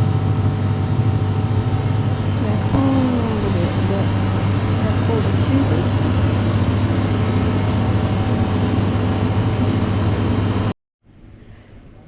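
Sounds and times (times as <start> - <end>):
motorcycle engine drone: 1.5 - 10.7.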